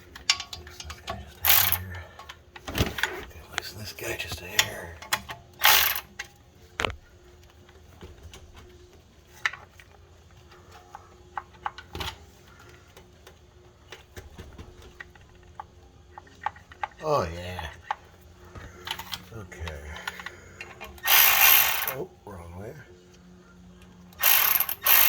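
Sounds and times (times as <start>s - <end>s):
hand tools clicking on metal: 0.0s - 2.4s, 4.2s - 6.3s, 18.8s - 22.0s, 24.2s - 25.0s
socket ratchet clicking: 0.2s - 1.8s, 4.6s - 6.1s, 21.0s - 22.0s, 24.2s - 25.0s.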